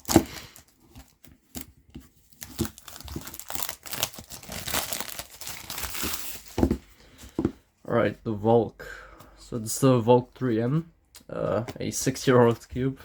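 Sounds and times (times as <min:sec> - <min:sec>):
packaging crinkling and tearing: 0:00.0 - 0:06.7.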